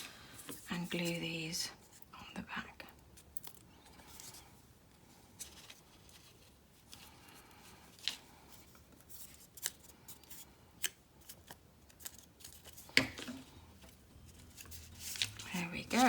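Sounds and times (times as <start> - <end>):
paper rustling: 5.4 - 16.0.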